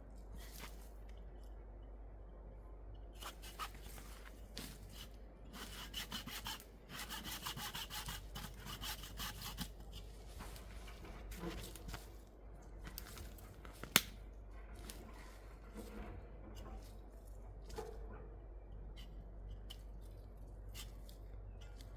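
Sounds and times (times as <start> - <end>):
hand saw cutting wood: 5.6 - 9.6.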